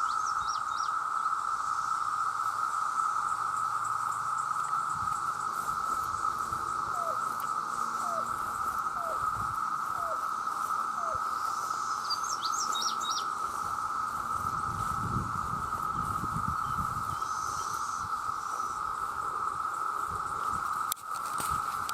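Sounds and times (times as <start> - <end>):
cicada chorus drone: 0.0 - 21.9.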